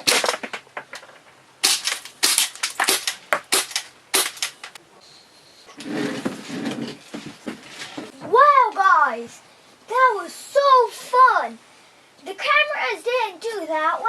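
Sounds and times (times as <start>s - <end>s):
pellets smacking into plastic: 0.0s - 4.8s
airsoft pistol cracks: 1.6s - 4.8s.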